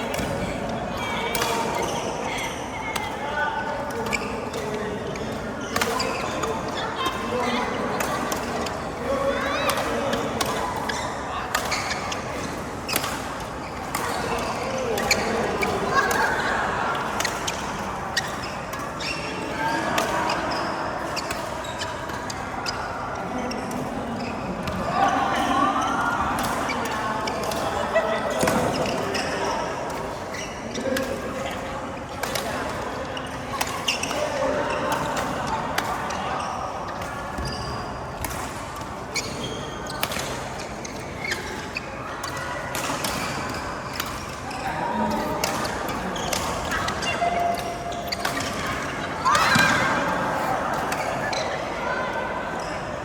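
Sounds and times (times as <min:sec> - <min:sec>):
echoing hall noise: 0:00.0 - 0:53.0
shoe squeaks: 0:01.4 - 0:02.8, 0:04.0 - 0:06.9, 0:09.4 - 0:16.2, 0:17.2 - 0:22.9, 0:30.2 - 0:30.9, 0:33.2 - 0:35.2, 0:36.4 - 0:38.0, 0:39.1 - 0:51.6
racket hitting shuttlecock: 0:03.9 - 0:07.2, 0:09.7 - 0:19.3, 0:26.2 - 0:27.7, 0:33.6 - 0:36.2, 0:36.9 - 0:39.3, 0:40.0 - 0:44.4, 0:45.2 - 0:51.7.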